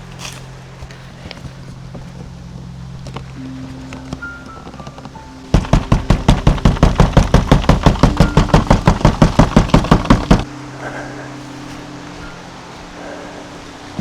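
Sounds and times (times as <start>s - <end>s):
rapid loud knocks: 5.5s - 10.5s.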